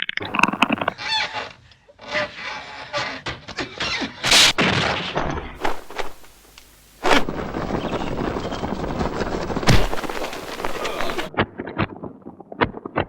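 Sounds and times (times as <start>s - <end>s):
steady noisy rush: 5.6s - 11.3s
sharp hits and crashes: 9.6s - 11.3s.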